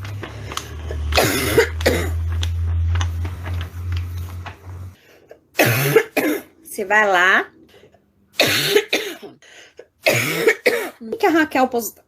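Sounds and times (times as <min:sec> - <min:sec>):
woman's barking cough: 0:01.2 - 0:02.2, 0:05.6 - 0:06.5, 0:08.4 - 0:09.4, 0:10.0 - 0:11.0.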